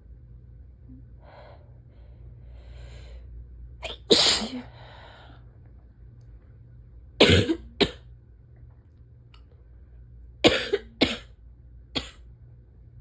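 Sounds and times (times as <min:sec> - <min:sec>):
harsh barking cough: 0:07.2 - 0:08.0, 0:10.5 - 0:11.3.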